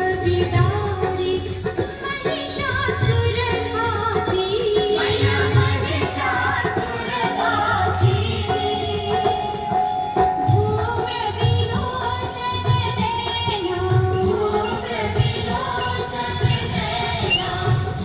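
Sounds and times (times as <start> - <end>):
song with wavering sung melody: 0.0 - 18.0
sustained instrument notes: 12.0 - 18.0.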